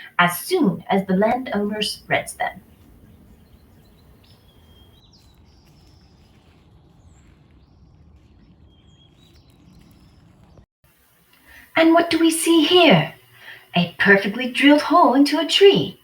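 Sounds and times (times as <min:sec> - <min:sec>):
low background rumble: 0:00.0 - 0:10.7
high bird chirps: 0:02.5 - 0:10.6.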